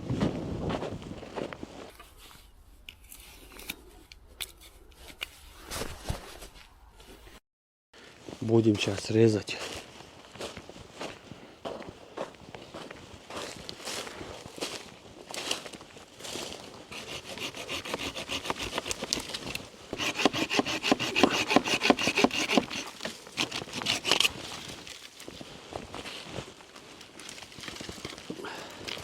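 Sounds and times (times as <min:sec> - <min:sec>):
hand saw cutting wood: 0:16.9 - 0:24.4.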